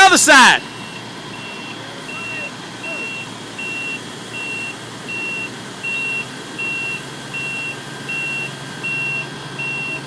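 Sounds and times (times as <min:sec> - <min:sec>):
diesel engine running: 0:00.0 - 0:10.0
reversing alarm beeping: 0:00.0 - 0:10.0.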